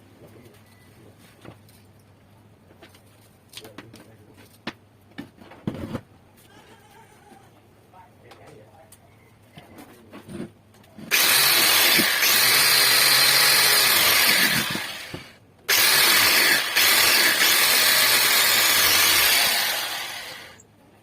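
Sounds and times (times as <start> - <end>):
power tool running loudly: 11.1 - 20.6.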